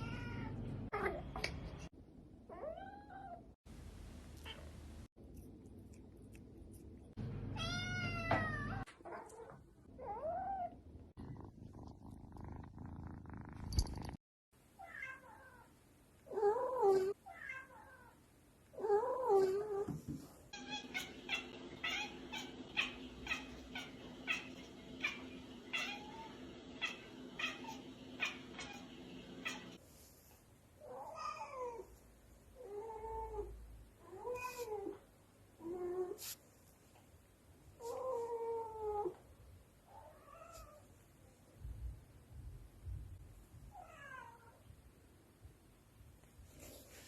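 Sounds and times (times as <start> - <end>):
cats meowing and caterwauling: 7.6 - 10.8, 20.6 - 29.8.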